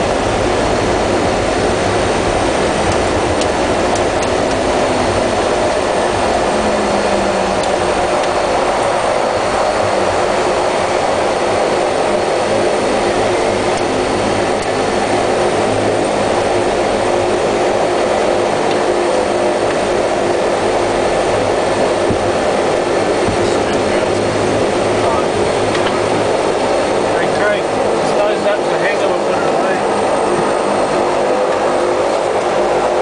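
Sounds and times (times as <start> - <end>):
aircraft engine drone: 0.0 - 33.0
low propeller hum: 0.0 - 33.0.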